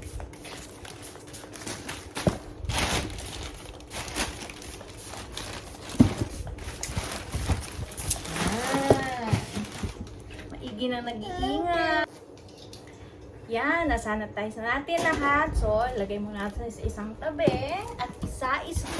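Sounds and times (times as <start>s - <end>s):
parcels rustling: 0.9s - 10.5s.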